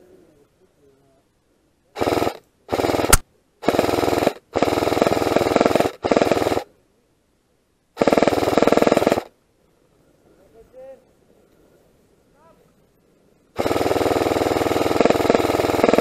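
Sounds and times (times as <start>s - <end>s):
airsoft rifle firing bursts: 2.0s - 6.7s, 8.0s - 9.3s, 13.6s - 16.0s.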